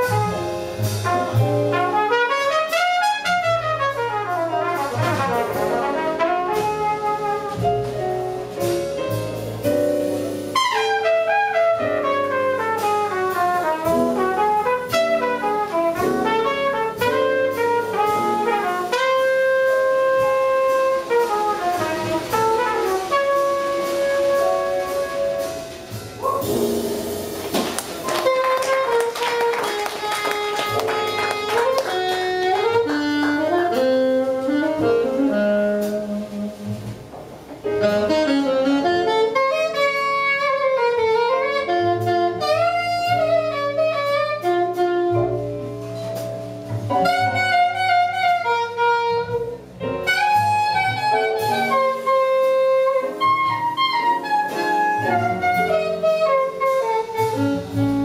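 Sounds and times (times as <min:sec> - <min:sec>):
trumpet: 0:00.0 - 0:08.8, 0:09.6 - 0:37.0, 0:37.6 - 0:58.0
double bass: 0:00.0 - 0:58.0
drums: 0:00.0 - 0:58.0
piano: 0:00.0 - 0:58.0
saxophone: 0:28.0 - 0:37.0, 0:37.6 - 0:45.8, 0:47.0 - 0:58.0.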